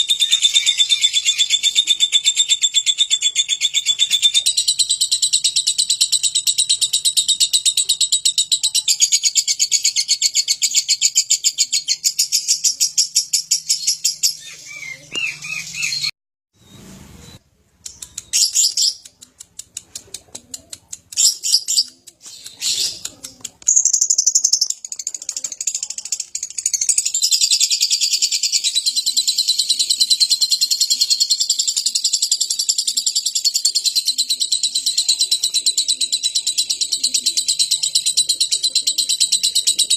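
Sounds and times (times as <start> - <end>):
lovebird rapid high chatter: 0.0 - 16.1, 17.9 - 39.9
clicks: 17.8 - 24.6.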